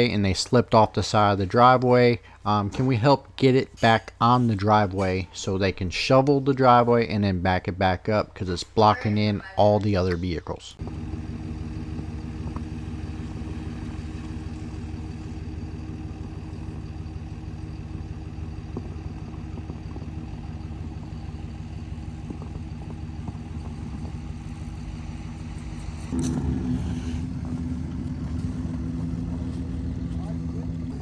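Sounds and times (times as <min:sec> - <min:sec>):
vehicle engine running: 0:10.7 - 0:31.0.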